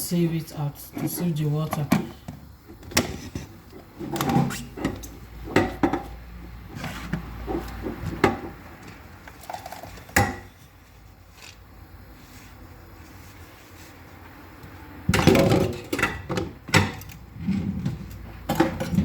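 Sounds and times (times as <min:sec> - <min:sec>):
kitchen utensils knocking and clinking: 0:04.0 - 0:06.2, 0:15.1 - 0:17.2, 0:18.4 - 0:19.0.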